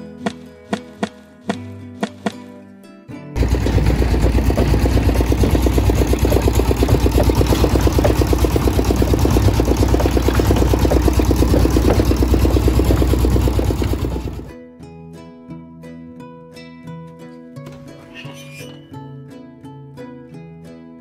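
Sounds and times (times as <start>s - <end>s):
engine running with low rumble: 3.4s - 14.5s.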